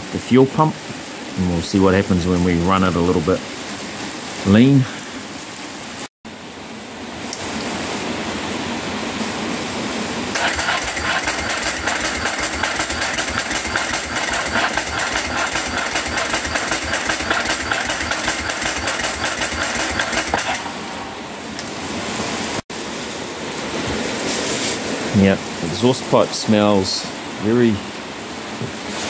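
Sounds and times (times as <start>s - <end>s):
electric starter cranking engine: 10.4s - 20.8s.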